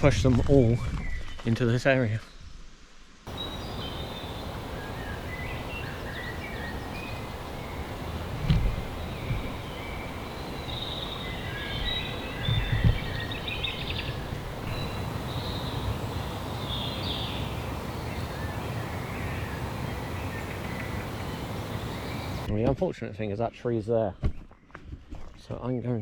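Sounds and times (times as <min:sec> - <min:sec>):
birds calling: 0:03.3 - 0:22.5
low thumps: 0:06.6 - 0:11.2, 0:11.8 - 0:16.1.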